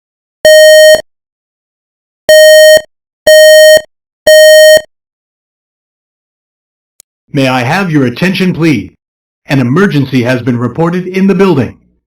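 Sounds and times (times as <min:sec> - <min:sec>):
fire alarm buzzy tones: 0:02.3 - 0:04.9.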